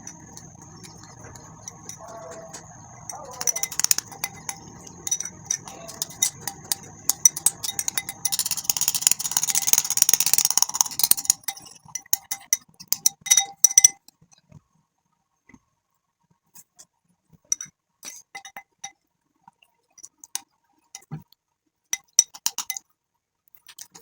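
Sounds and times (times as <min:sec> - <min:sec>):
spoon scraping against bowl: 0:00.0 - 0:13.1.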